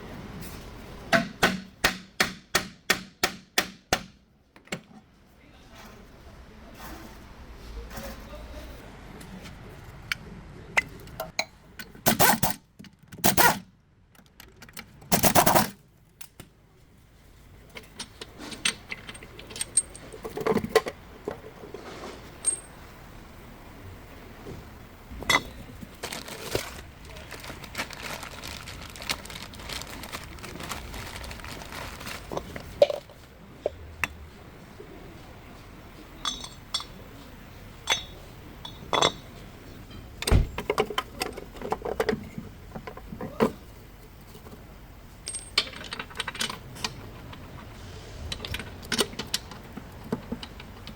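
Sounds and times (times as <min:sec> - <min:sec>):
metal tools clinking and knocking: 0:17.8 - 0:21.0, 0:22.4 - 0:22.8, 0:36.2 - 0:37.0, 0:37.9 - 0:39.3, 0:45.2 - 0:47.6.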